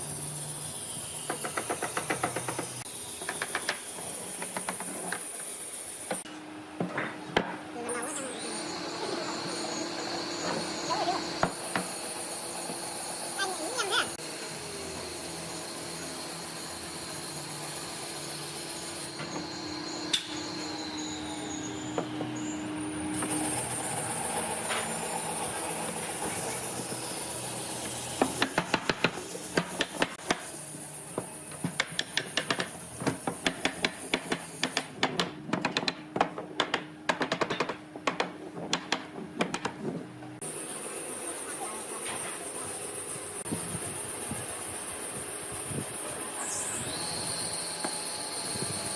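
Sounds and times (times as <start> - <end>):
tools knocking on wood: 1.3 - 3.8, 31.2 - 40.0.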